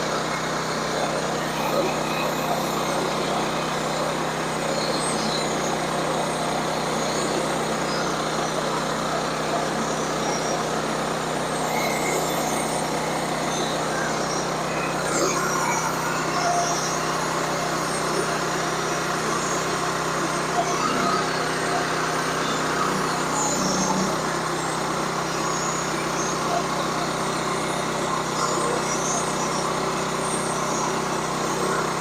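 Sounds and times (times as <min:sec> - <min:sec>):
engine hum: 0:00.0 - 0:32.0.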